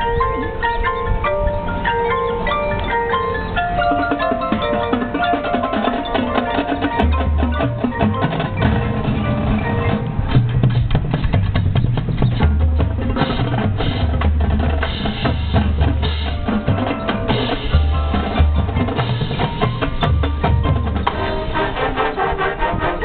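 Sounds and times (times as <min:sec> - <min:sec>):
sustained wind chords: 0:00.0 - 0:11.4, 0:20.8 - 0:23.0
snare drums: 0:04.0 - 0:22.5
bass drums: 0:07.0 - 0:21.6.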